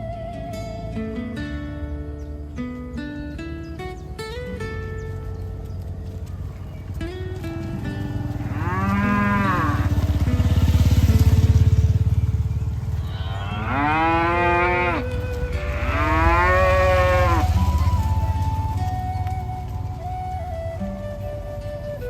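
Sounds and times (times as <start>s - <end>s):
cattle mooing: 8.0s - 10.1s, 13.0s - 17.7s.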